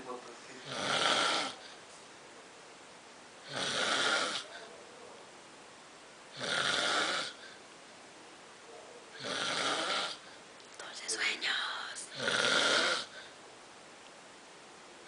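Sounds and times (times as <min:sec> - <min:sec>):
man snoring: 0:00.6 - 0:01.8, 0:03.4 - 0:04.6, 0:06.3 - 0:07.5, 0:09.2 - 0:10.2, 0:12.1 - 0:13.3.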